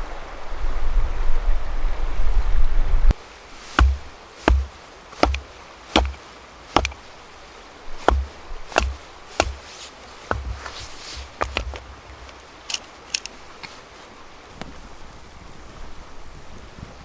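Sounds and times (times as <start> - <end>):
blade chopping wood: 3.8 - 7.1, 8.0 - 11.8.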